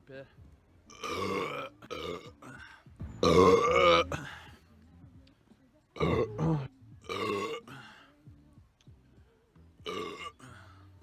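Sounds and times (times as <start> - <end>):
man burping: 0.9 - 2.6, 3.2 - 4.3, 6.0 - 7.8, 9.8 - 10.6.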